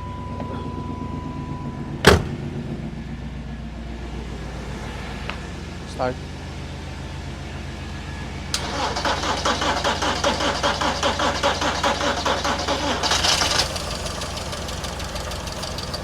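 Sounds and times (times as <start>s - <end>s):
car engine idling: 0.0s - 16.0s
car engine cranking on starter: 6.8s - 16.0s.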